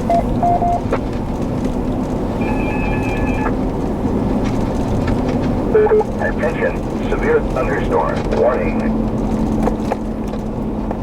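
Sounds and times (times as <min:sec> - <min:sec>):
two-note radio tone: 0:00.0 - 0:00.9, 0:02.4 - 0:03.6
short radio beep: 0:00.1 - 0:00.9, 0:02.4 - 0:03.5.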